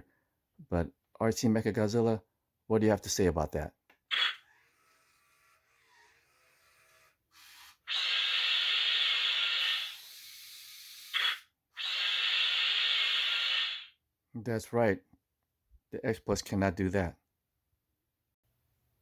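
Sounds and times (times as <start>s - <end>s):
toy hissing bursts: 4.1s - 14.0s.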